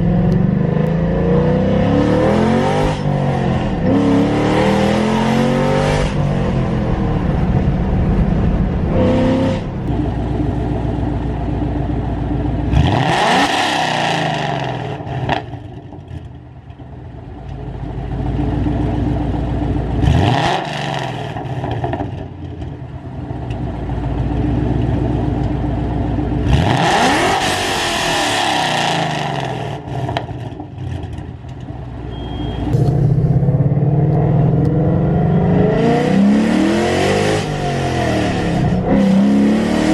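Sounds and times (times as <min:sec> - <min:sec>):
car engine revving: 0:00.0 - 0:16.3, 0:19.9 - 0:22.2, 0:26.2 - 0:31.5, 0:32.6 - 0:39.9.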